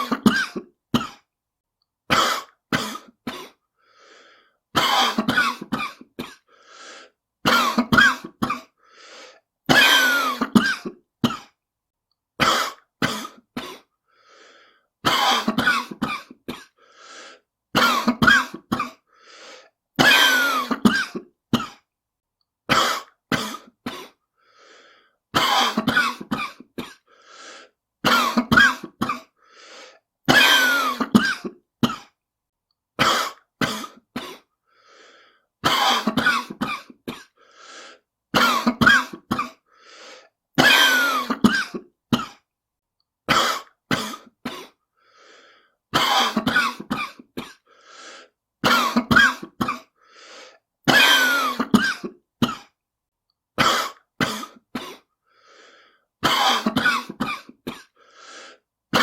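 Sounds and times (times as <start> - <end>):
person coughing: 0.0 - 1.3, 2.1 - 3.6, 4.8 - 6.5, 7.4 - 8.8, 9.7 - 11.6, 12.4 - 13.9, 15.0 - 16.8, 17.7 - 19.1, 20.0 - 21.9, 22.7 - 24.2, 25.3 - 27.2, 28.0 - 29.4, 30.3 - 32.2, 33.0 - 34.5, 35.6 - 37.4, 38.3 - 39.7, 40.6 - 42.5, 43.3 - 44.8, 45.9 - 47.7, 48.6 - 50.0, 50.9 - 52.8, 53.6 - 55.1, 56.2 - 58.0.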